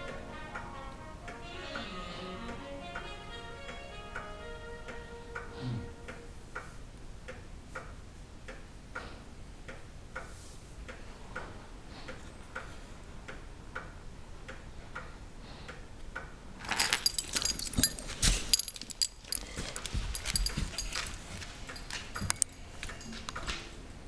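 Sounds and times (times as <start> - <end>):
rustling with metallic jingling: 16.6 - 23.7.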